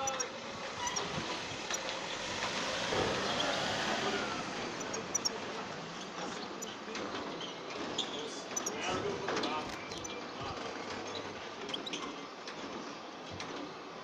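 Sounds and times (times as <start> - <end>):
faint high chirps: 0.0 - 1.1
vehicle passing: 0.2 - 7.3.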